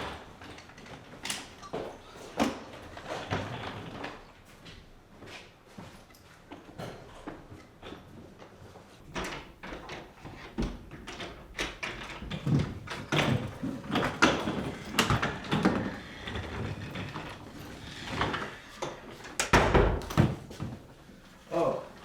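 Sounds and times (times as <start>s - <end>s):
objects knocking and clattering: 9.1s - 20.9s.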